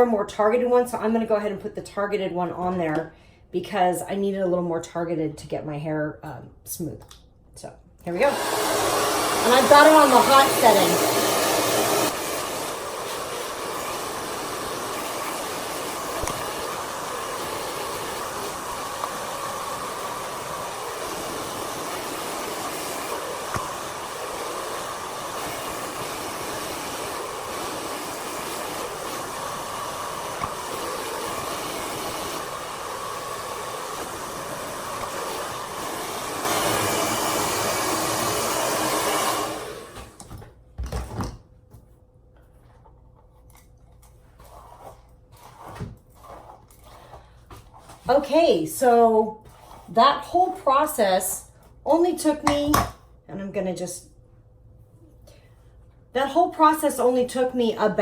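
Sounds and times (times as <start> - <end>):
hair dryer blowing: 8.1 - 40.3.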